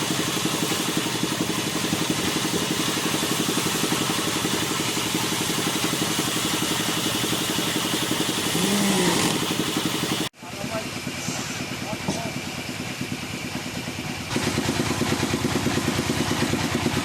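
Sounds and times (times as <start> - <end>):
machine pulsing: 0.1 - 10.3.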